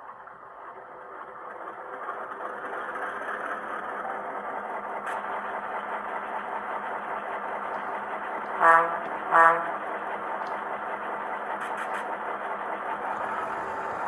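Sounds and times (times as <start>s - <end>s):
diesel engine drone from speaker: 0.0s - 14.0s
locomotive horn blasts: 8.4s - 9.9s.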